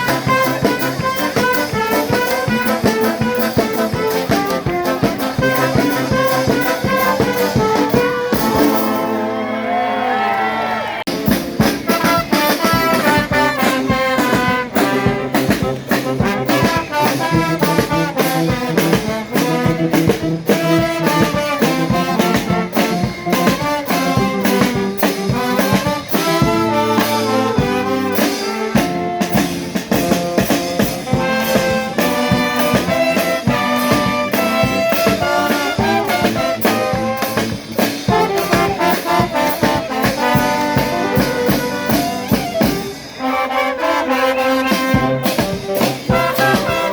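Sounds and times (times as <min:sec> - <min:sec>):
brass band playing: 0:00.0 - 0:46.9.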